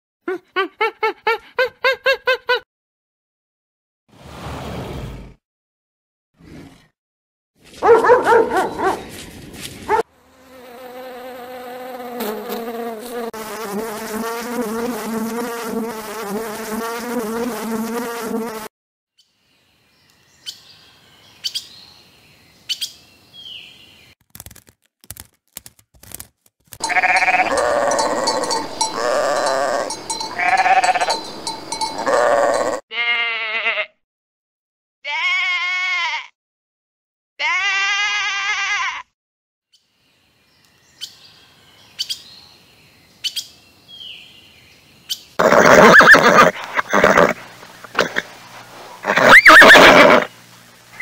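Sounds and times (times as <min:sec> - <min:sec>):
bleating: 0:26.8 - 0:31.2, 0:32.0 - 0:34.0, 0:35.0 - 0:36.4, 0:37.4 - 0:39.1, 0:45.4 - 0:48.3, 0:49.0 - 0:50.3
loud animal call: 0:26.8 - 0:31.3, 0:31.9 - 0:33.9, 0:45.4 - 0:48.3, 0:48.9 - 0:50.3.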